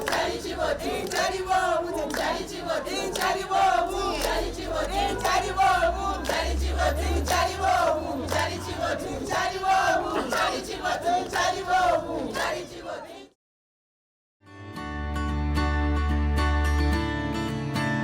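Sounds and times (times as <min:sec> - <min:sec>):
crowd singing and chanting: 0:00.0 - 0:13.4.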